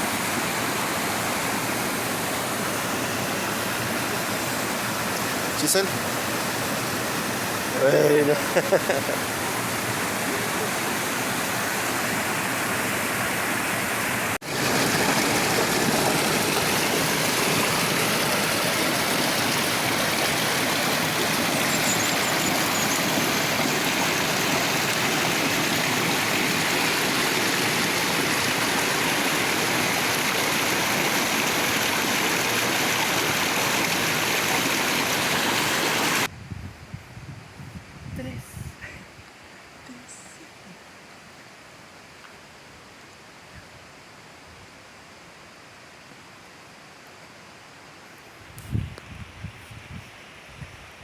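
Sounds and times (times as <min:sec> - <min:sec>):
running water: 0:00.0 - 0:36.3.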